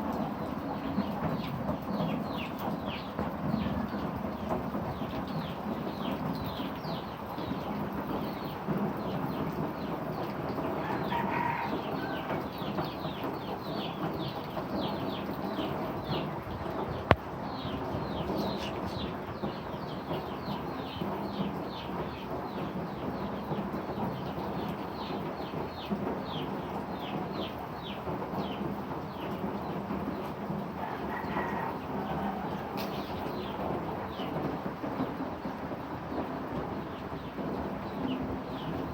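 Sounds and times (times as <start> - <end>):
steady rain: 0.0 - 38.9
birds chirping: 10.2 - 23.5, 24.1 - 35.5.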